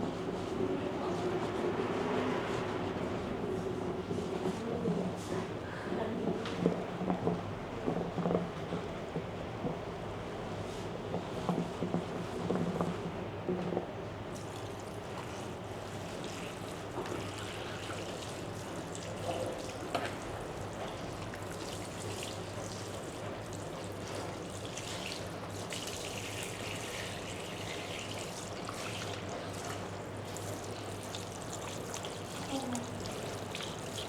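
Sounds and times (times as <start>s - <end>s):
water trickling: 14.3s - 34.0s.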